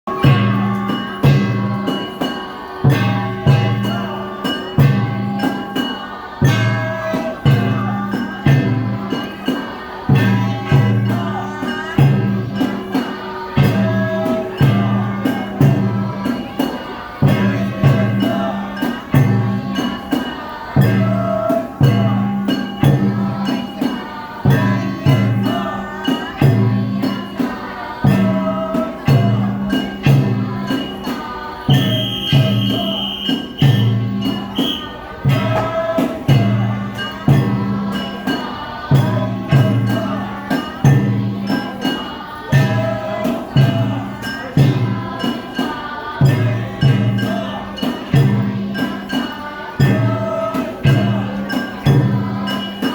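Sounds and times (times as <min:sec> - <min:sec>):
jangling metal percussion: 0:00.0 - 0:52.9
low drum beats: 0:31.7 - 0:38.3.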